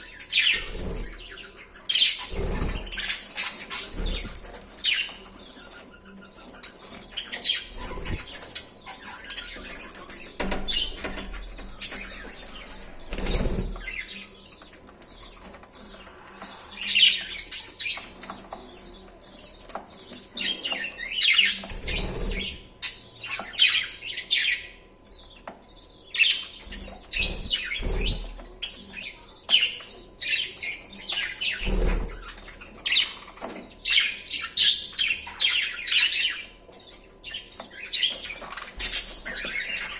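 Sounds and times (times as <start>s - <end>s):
budgerigars chirping: 0.0s - 39.9s
wings flapping: 7.8s - 8.4s, 26.8s - 28.4s.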